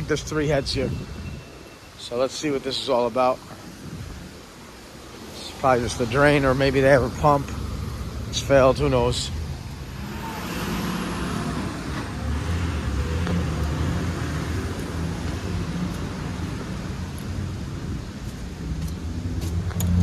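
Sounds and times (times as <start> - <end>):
road noise: 0.0 - 20.0
vehicle engine hum: 4.2 - 20.0.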